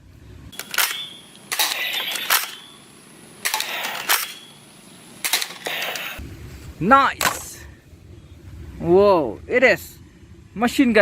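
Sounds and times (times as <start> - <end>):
sharp plastic clicks: 0.5 - 2.7, 3.4 - 4.4, 5.2 - 6.2
toy blaster mechanical rattling: 0.6 - 2.7, 3.4 - 4.5, 5.2 - 6.2.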